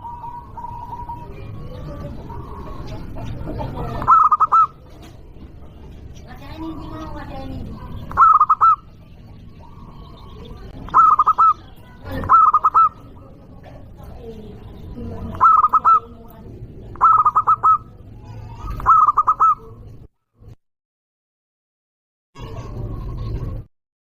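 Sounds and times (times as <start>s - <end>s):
dove cooing: 0.0s - 5.8s, 6.5s - 16.3s, 16.9s - 19.8s.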